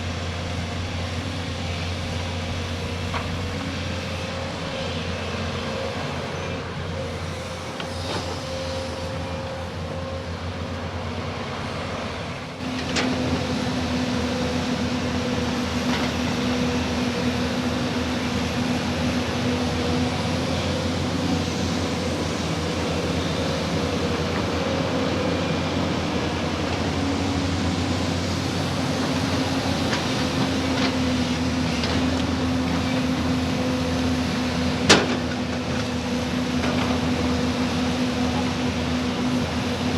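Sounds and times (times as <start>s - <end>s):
diesel engine droning: 0.0s - 39.9s.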